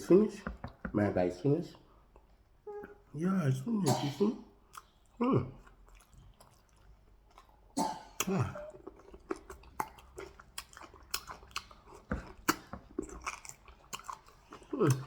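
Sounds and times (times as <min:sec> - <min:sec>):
wet mouth chewing: 0:04.6 - 0:15.0.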